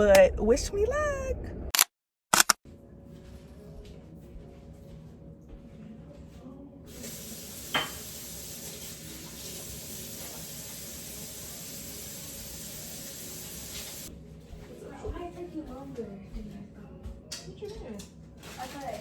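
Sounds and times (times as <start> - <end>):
sharp click: 1.8 - 2.6.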